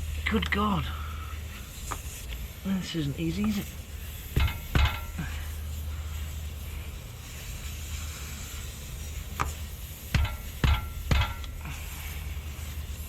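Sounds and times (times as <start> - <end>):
air hissing from tyre: 0.0 - 13.0
tool clicks and knocks: 4.4 - 5.2, 10.2 - 11.6.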